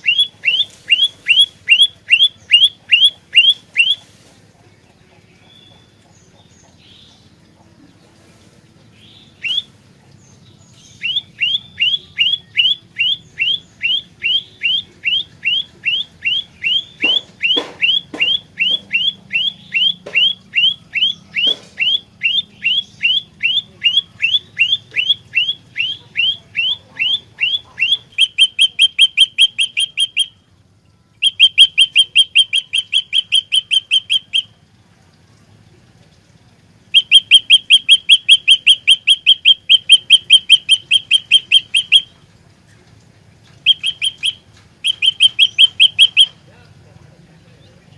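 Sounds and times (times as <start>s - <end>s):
bird calling sharp repeated notes: 0.0s - 4.1s, 9.3s - 9.8s, 10.7s - 34.7s, 36.9s - 42.2s, 43.5s - 46.6s.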